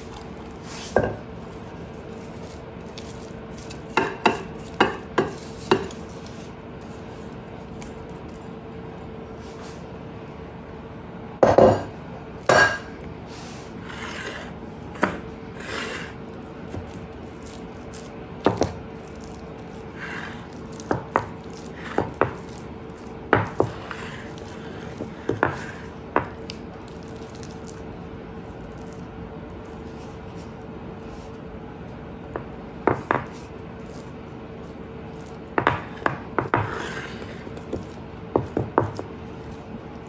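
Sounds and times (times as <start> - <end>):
utensils knocking on dishes: 11.4 - 11.9, 12.5 - 12.9.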